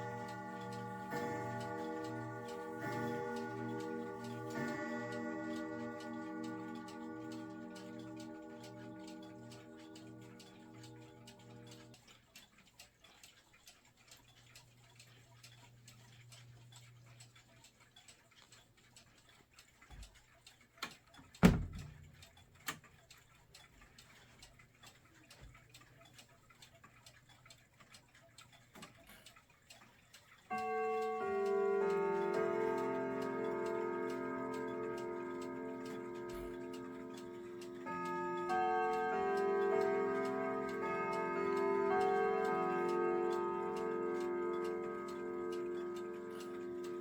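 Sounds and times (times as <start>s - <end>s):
clock chime: 0.0s - 12.1s, 30.5s - 47.0s
mechanical clock ticking: 0.0s - 47.0s.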